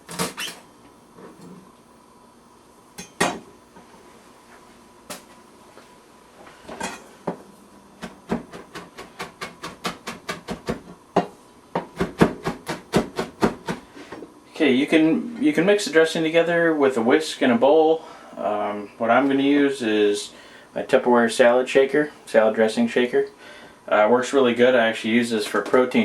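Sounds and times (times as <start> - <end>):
knife chopping on cutting board: 11.8 - 13.8.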